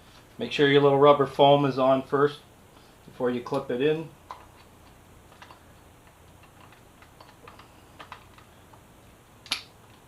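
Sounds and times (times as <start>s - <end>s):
plastic parts clicking: 6.3s - 8.8s.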